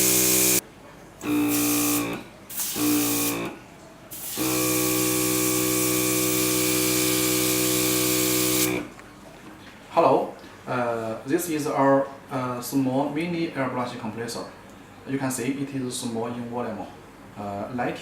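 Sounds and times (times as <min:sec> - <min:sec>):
airbrush compressor humming: 0:00.0 - 0:00.6, 0:01.2 - 0:08.9.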